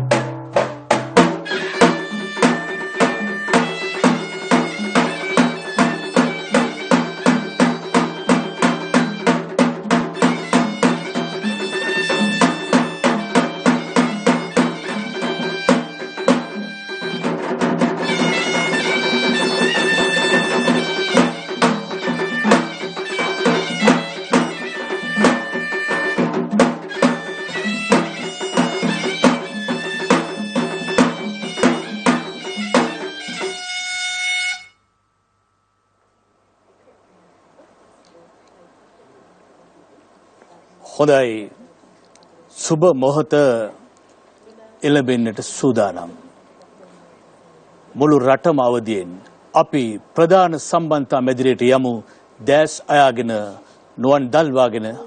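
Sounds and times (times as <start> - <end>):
fast drumming: 0.0 - 33.6
reed pipe melody: 0.0 - 38.0.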